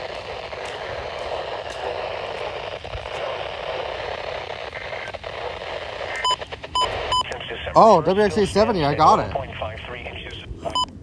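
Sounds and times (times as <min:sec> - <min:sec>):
radio static hiss: 0:00.0 - 0:11.0.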